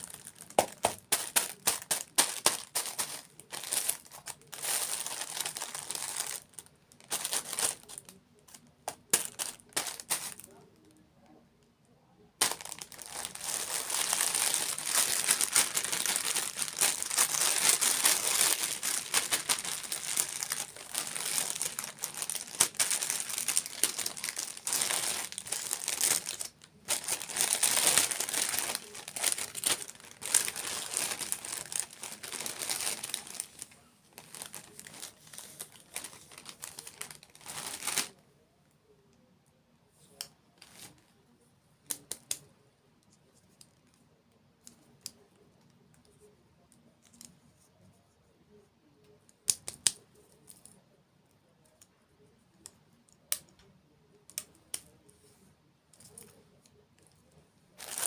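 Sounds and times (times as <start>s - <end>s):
food packaging crinkling: 0.0s - 10.5s, 12.4s - 38.1s, 57.8s - 58.0s.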